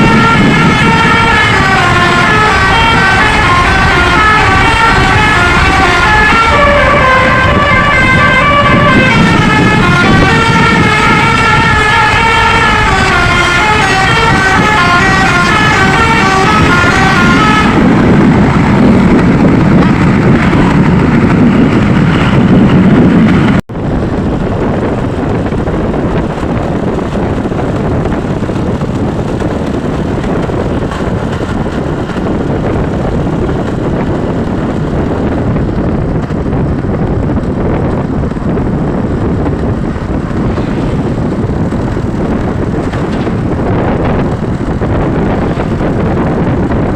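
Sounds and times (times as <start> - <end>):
musical air horn tune: 0.0 - 17.9
vehicle rumble: 0.0 - 46.9.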